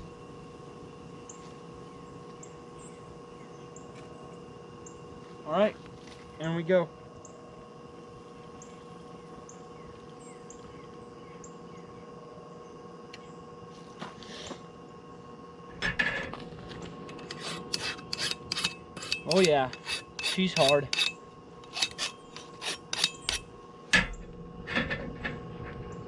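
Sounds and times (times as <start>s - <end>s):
forge blower humming: 0.0s - 26.0s
file scraping steel blade: 17.1s - 23.5s.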